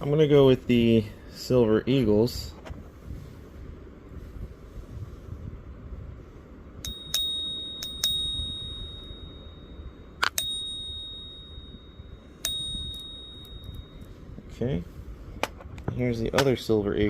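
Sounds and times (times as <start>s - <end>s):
coin tapped ringing ping: 6.8s - 14.2s.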